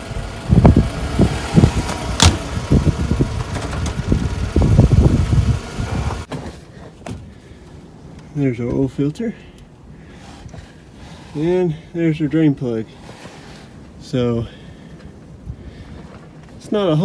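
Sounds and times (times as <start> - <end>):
car engine running: 0.0 - 6.3
low thumps and knocks: 0.5 - 6.3.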